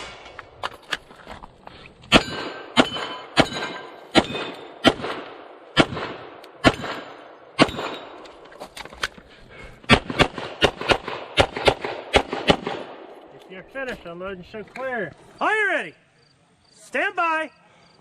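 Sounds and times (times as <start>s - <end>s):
steel targets ringing: 2.1s - 4.8s
pistol shots: 2.1s - 8.2s, 9.9s - 13.1s.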